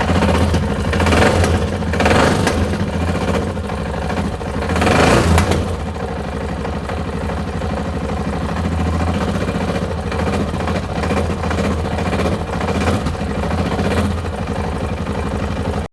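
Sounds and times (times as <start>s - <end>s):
engine knocking: 0.0s - 15.9s
motorcycle engine idling: 0.0s - 15.9s.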